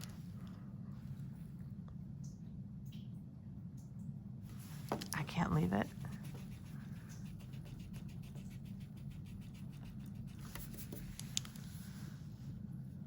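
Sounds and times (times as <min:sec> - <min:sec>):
pencil scratching on paper: 0:05.8 - 0:11.2.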